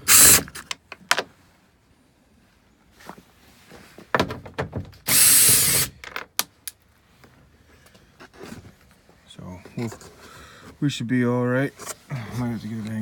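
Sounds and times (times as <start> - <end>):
cordless drill running: 0.0 - 0.4, 5.1 - 6.0
clicks and knocks of screw and tool: 6.0 - 6.8.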